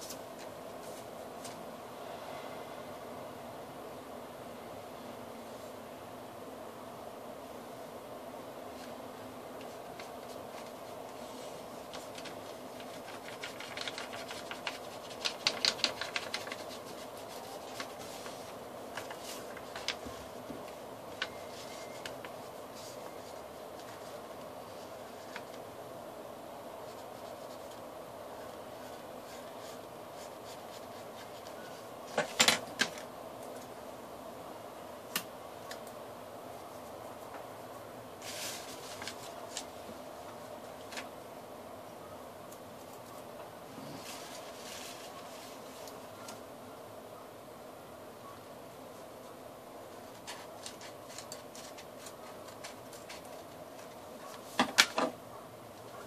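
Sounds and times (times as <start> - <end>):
low room hum: 0.0 - 56.0
paper crackling and creasing: 9.6 - 25.7, 26.8 - 33.1, 38.2 - 39.8, 43.8 - 46.0, 49.9 - 55.0.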